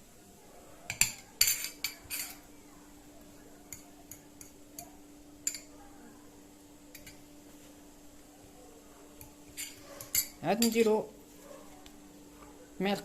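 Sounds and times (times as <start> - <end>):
fork clinking against a dish: 0.9 - 2.5, 9.2 - 10.9.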